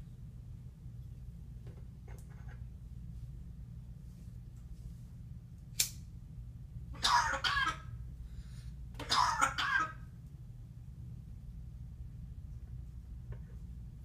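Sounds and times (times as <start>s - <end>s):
sharp click: 5.8s - 6.0s
parrot mimicking a cough: 7.0s - 7.9s, 9.0s - 10.1s.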